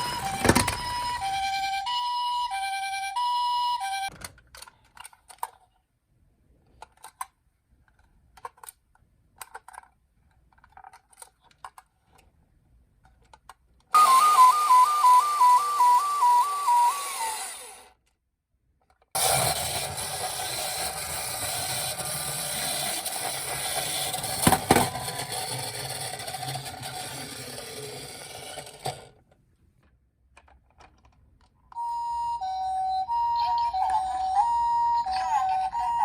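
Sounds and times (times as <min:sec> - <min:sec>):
slow two-tone hi-lo siren: 0:00.0 - 0:04.1, 0:14.0 - 0:17.6, 0:31.8 - 0:36.0
fast two-tone warble siren: 0:14.0 - 0:17.4.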